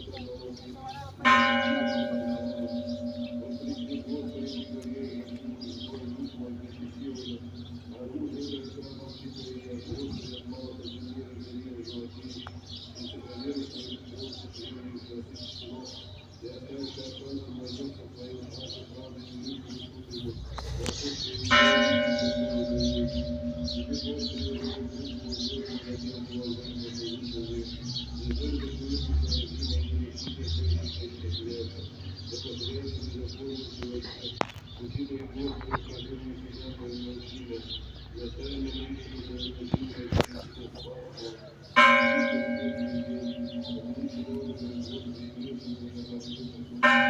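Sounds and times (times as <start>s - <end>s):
low steady hum: 0.0s - 14.1s, 17.2s - 28.5s, 41.8s - 47.0s
faint murmuring: 0.0s - 47.0s
small birds chirping: 0.0s - 47.0s.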